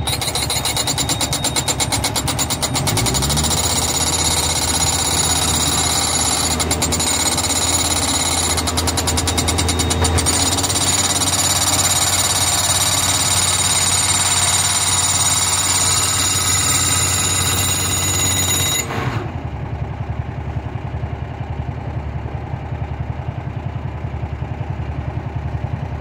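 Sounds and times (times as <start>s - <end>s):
rapid mechanical hammering: 0.0s - 18.9s
machine engine revving: 0.0s - 19.4s.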